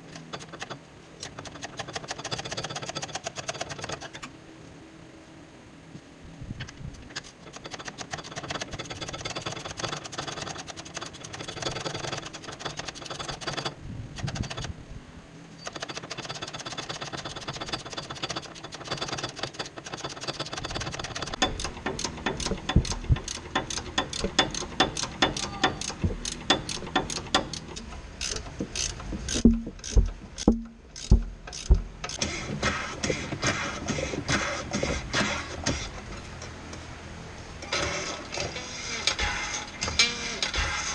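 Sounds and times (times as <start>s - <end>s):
ratchet wrench clicking: 15.6s - 32.3s
sharp knocks: 21.3s - 35.8s.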